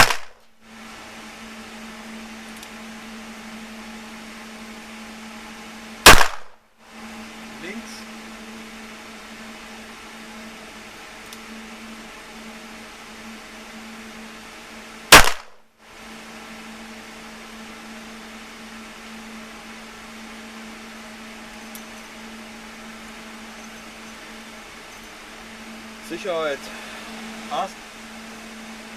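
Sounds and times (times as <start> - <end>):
handgun shot: 0.0 - 0.4, 6.0 - 6.6, 15.1 - 15.6
low hum: 0.0 - 28.9.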